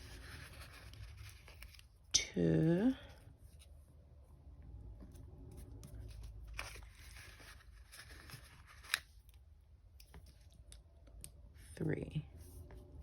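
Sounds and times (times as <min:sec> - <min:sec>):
paper rustling: 0:00.0 - 0:02.0, 0:05.9 - 0:09.2.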